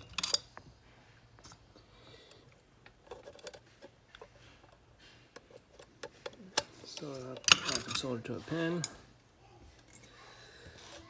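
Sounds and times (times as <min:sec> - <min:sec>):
hand tools clicking and tapping: 0:02.3 - 0:09.0.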